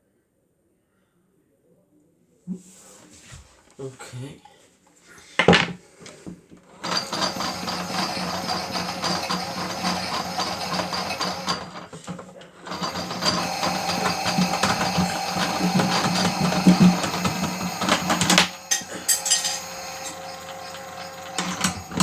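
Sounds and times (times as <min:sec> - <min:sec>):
small electric motor humming: 0:12.6 - 0:22.0.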